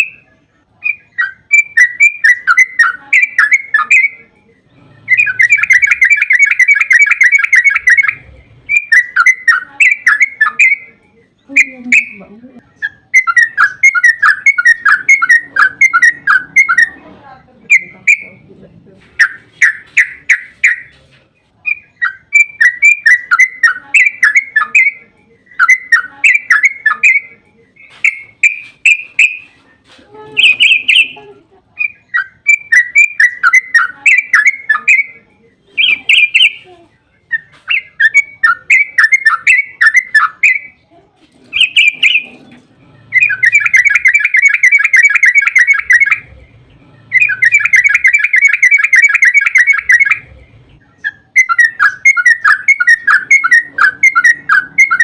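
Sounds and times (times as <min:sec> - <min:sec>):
bird chattering and trilling: 0:00.0 - 0:40.8, 0:41.4 - 0:55.0.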